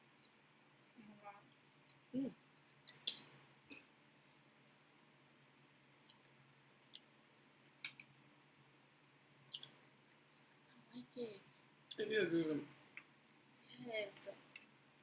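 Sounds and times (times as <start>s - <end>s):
faint eating clicks: 0.1s - 3.8s, 5.5s - 7.2s.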